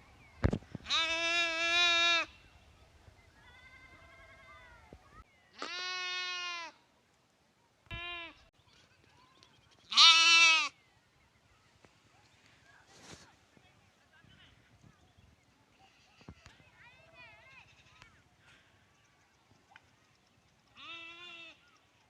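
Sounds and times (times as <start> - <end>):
lambs bleating: 0.9 - 2.3, 5.6 - 6.7, 9.9 - 10.7, 20.8 - 21.6.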